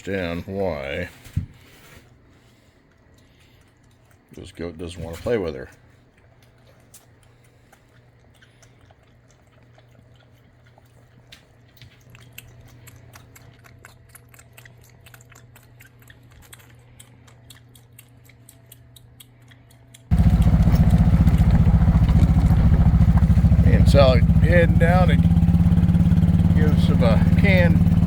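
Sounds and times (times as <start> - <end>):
goat suckling wet clicks: 1.6 - 28.0
low hum: 20.1 - 28.0
vehicle engine running: 20.1 - 28.0.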